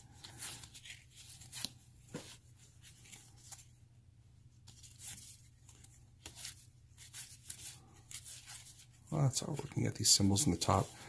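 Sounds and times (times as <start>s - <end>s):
cards rustling: 0.1s - 3.8s, 4.6s - 11.0s
soft brushing strokes: 6.4s - 11.0s.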